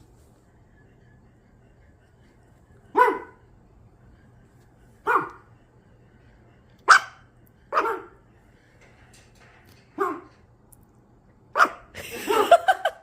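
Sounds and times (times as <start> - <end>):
dog barking sharply: 3.0 - 3.4, 5.1 - 5.4, 10.0 - 10.3.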